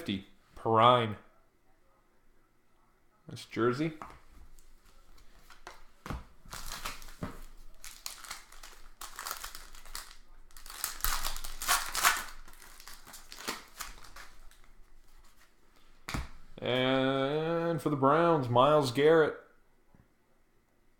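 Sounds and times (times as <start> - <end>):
cards knocking against table: 5.6 - 7.4, 16.1 - 16.4
card pack wrapper crinkling: 6.5 - 15.5.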